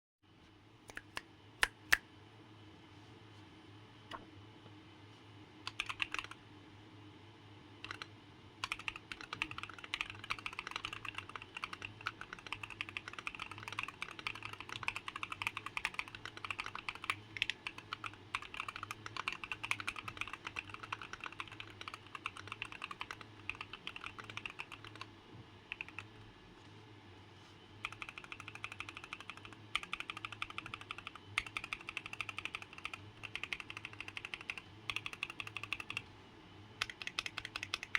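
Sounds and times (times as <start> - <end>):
faint low hum: 0.3 - 37.9
mechanical keyboard typing: 5.7 - 6.4, 7.8 - 25.1, 25.7 - 26.1, 27.8 - 36.0, 36.8 - 37.9.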